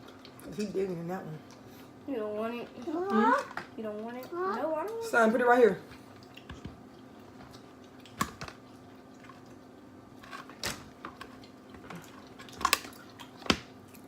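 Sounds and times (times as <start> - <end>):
clicks and taps of eating: 6.2 - 8.6.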